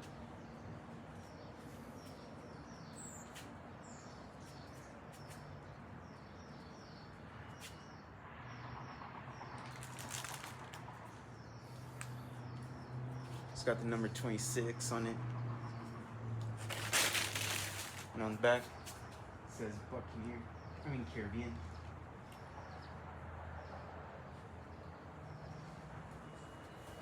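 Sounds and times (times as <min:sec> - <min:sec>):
fabric rustling: 0:16.6 - 0:18.1.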